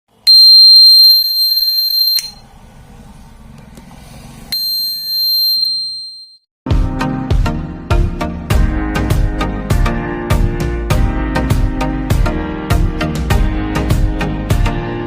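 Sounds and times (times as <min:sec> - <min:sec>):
doorbell buzzer tone: 0:00.3 - 0:02.4, 0:04.6 - 0:06.4.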